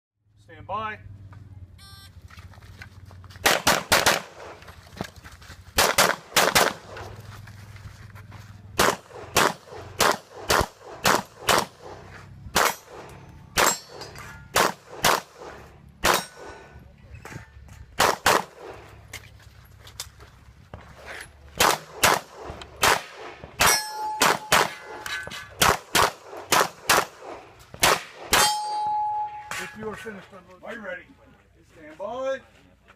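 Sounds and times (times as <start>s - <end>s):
pistol shots: 3.4s - 4.6s, 5.8s - 7.0s, 8.8s - 16.5s, 18.0s - 18.8s, 21.6s - 25.0s, 25.6s - 28.7s
steel targets clanging: 12.6s - 14.6s, 16.1s - 17.9s, 23.6s - 25.6s, 28.3s - 30.1s.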